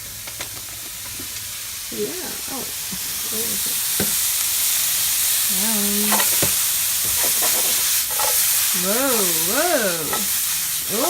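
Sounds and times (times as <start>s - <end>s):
vegetables sizzling in a pan: 0.0s - 11.0s.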